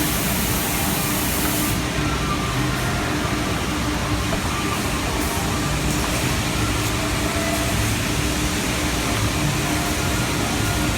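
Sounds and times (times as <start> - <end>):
pump running with low hum: 0.0 - 10.9.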